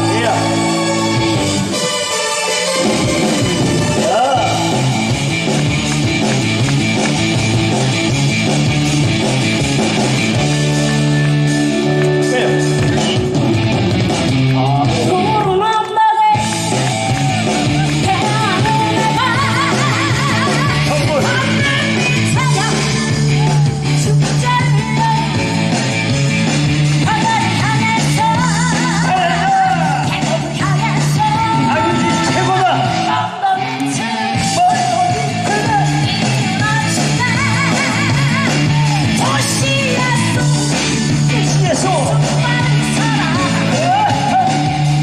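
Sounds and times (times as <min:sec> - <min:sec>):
held bass notes: 0:00.0 - 0:15.7, 0:16.4 - 0:45.0
backing band playing: 0:00.0 - 0:45.0
guitar: 0:00.0 - 0:45.0
steady drum beat: 0:02.7 - 0:15.5, 0:16.4 - 0:32.6
person singing with vibrato: 0:27.0 - 0:45.0.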